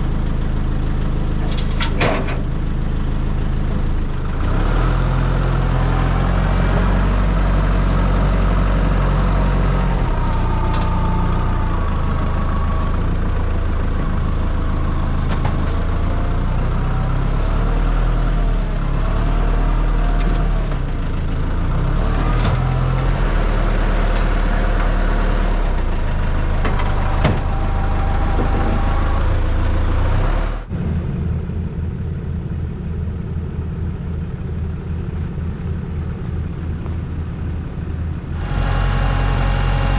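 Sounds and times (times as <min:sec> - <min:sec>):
heavy vehicle engine running: 0:00.0 - 0:39.9
low pulsing drone: 0:00.0 - 0:39.9
rising and falling whines: 0:05.2 - 0:16.4, 0:25.6 - 0:30.7, 0:38.3 - 0:39.9.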